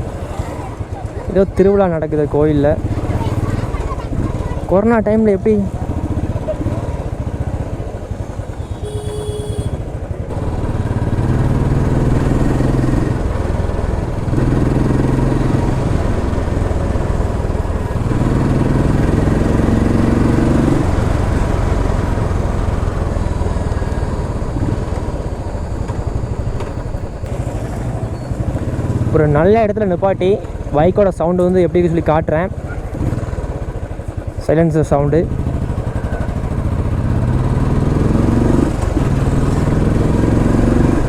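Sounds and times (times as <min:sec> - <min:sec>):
motorcycle engine thumping: 0:05.7 - 0:19.4, 0:20.8 - 0:29.1.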